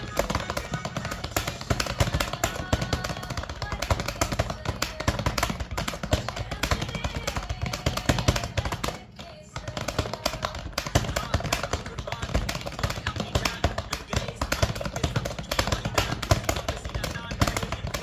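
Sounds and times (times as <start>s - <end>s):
fast typing on keyboard: 0.0s - 18.0s.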